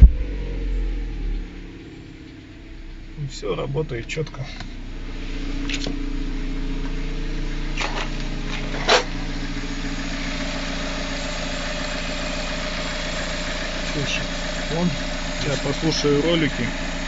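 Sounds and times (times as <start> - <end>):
car engine idling: 0.0 - 17.0
noisy roller running: 4.7 - 17.0.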